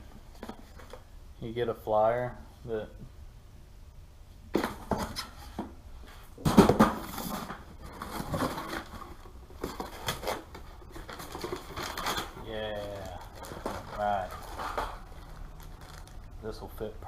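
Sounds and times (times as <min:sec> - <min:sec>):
paper and packaging rustling: 0:00.3 - 0:01.1, 0:06.4 - 0:16.9.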